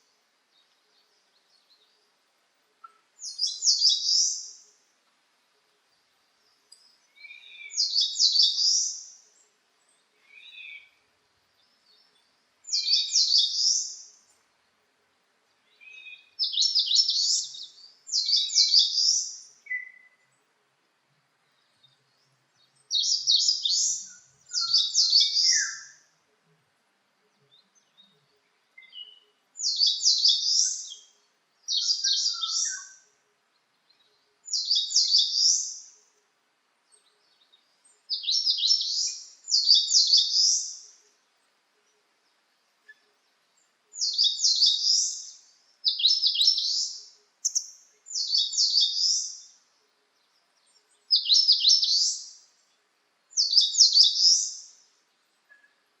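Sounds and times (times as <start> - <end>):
faint lower bird calls: 2.7 - 4.9, 6.4 - 14.4, 15.6 - 20.4, 21.5 - 26.2, 27.4 - 33.2, 33.8 - 36.1, 36.9 - 41.2, 44.0 - 52.7, 53.4 - 56.0.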